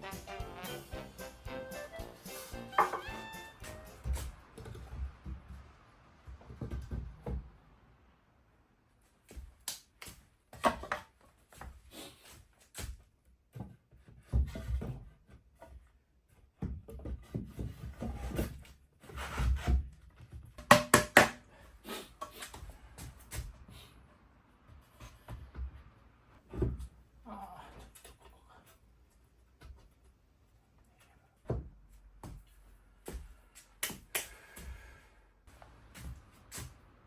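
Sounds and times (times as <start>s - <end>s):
wooden pieces knocking: 2.7s - 3.3s, 20.6s - 21.4s.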